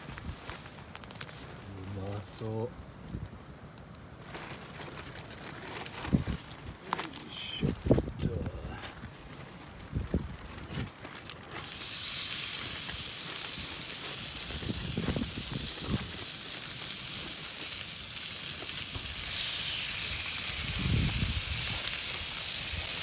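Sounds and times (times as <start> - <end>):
meat sizzling on hot surface: 11.6 - 23.0.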